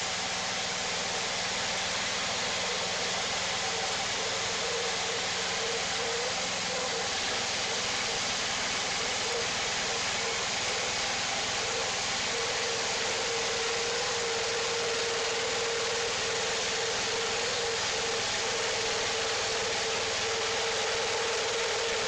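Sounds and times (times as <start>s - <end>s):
band sawmill engine droning: 0.0s - 22.0s.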